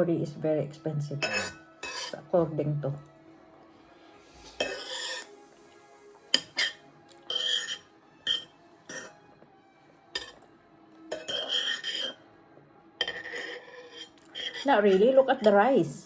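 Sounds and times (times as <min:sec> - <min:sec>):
cutlery clinking on plates: 0:01.2 - 0:02.2, 0:04.6 - 0:05.2, 0:06.4 - 0:09.1, 0:10.2 - 0:10.4, 0:11.1 - 0:12.2, 0:13.0 - 0:15.6.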